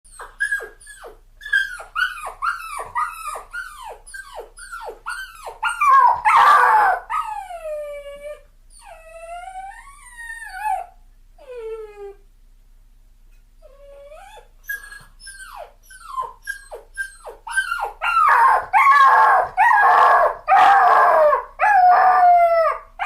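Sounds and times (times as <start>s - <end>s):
puppy whimpering and crying: 0.1s - 12.2s, 13.6s - 23.0s.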